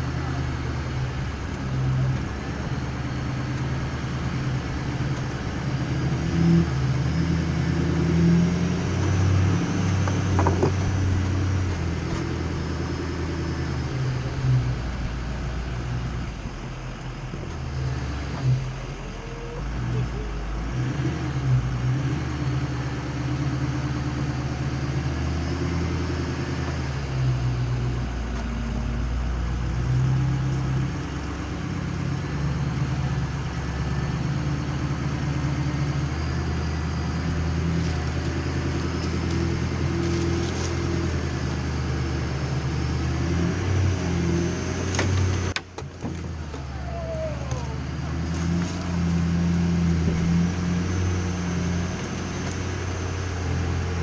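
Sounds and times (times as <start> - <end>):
diesel engine running: 0.0 - 54.0
truck knocks: 9.9 - 11.3, 44.8 - 46.7.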